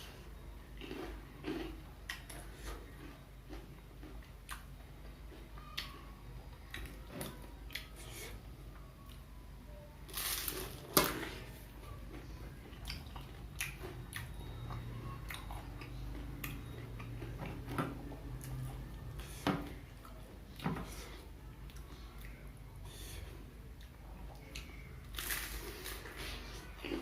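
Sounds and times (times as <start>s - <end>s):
biting and chewing fried snacks: 0.7s - 6.0s, 24.6s - 27.0s.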